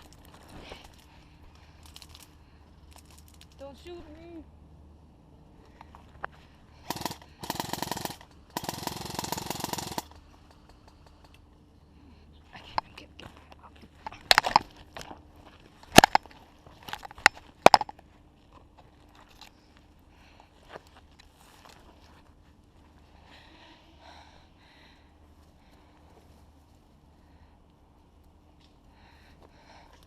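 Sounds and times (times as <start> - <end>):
airsoft gun firing bursts: 6.8 - 10.2.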